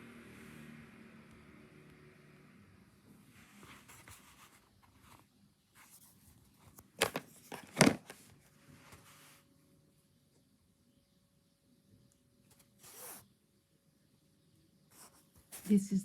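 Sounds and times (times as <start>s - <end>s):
handling rubbing and rustling: 3.3s - 9.5s, 12.5s - 13.3s.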